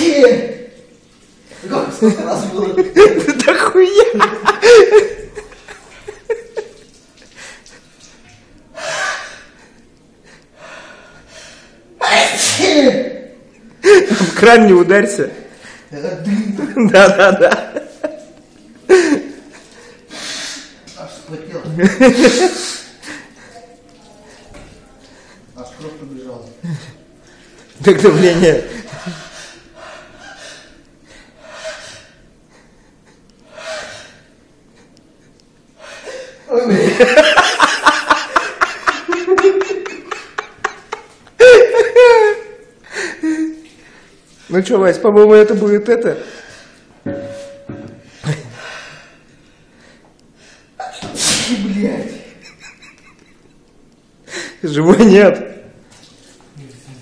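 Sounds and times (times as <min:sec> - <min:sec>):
man breathing heavily: 0:08.8 - 0:11.8, 0:28.9 - 0:34.4
man sneezing: 0:12.0 - 0:13.0, 0:50.8 - 0:51.8.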